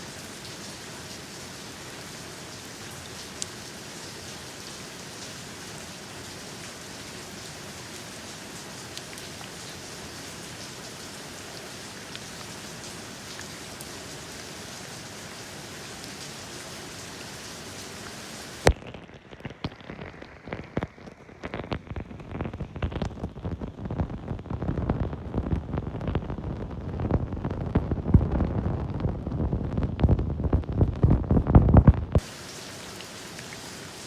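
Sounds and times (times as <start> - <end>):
rain hissing: 0.0 - 18.7, 32.2 - 34.0
heavy raindrops hitting nearby: 0.0 - 34.0.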